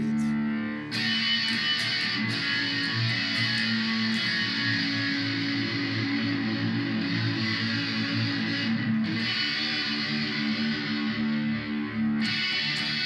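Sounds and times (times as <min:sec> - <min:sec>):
electric guitar with chorus effect: 0:00.0 - 0:13.0.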